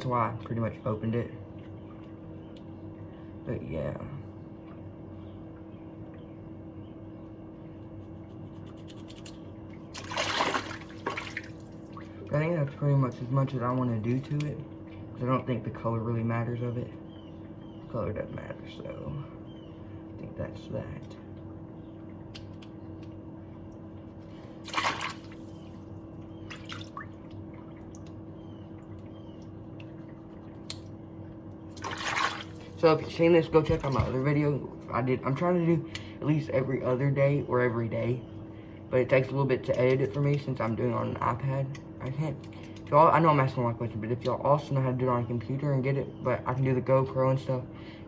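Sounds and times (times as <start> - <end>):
steady low hum: 0.0 - 48.0
water dripping in a sink: 26.5 - 28.2.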